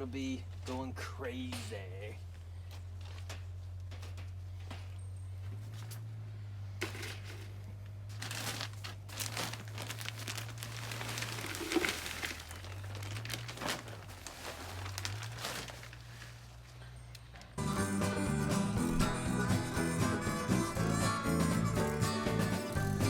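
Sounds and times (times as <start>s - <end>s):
crinkling and rustling of soil: 0.0s - 17.6s.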